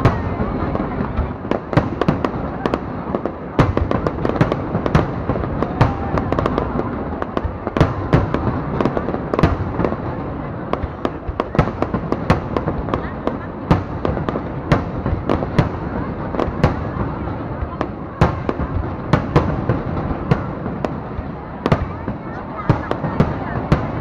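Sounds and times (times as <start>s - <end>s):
constant noisy din: 0.0s - 24.0s
fireworks exploding with sharp bangs: 0.0s - 24.0s.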